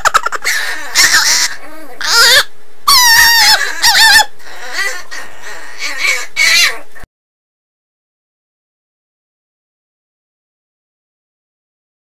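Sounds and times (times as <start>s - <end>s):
dog making high wavering calls: 0.9s - 4.3s, 5.8s - 6.9s.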